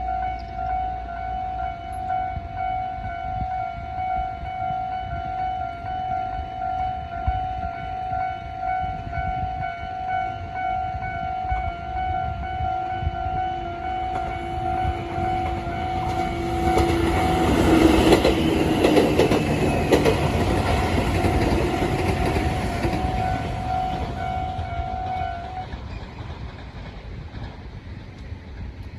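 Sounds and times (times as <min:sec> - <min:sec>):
level-crossing warning bell: 0:00.0 - 0:25.8
train wheels clattering: 0:14.1 - 0:28.9.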